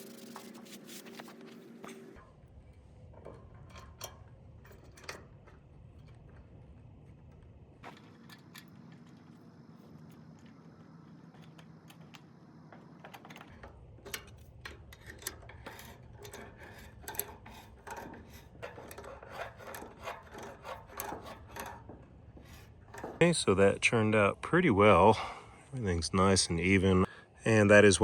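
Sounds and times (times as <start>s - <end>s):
small metal parts clinking: 13.1s - 23.2s.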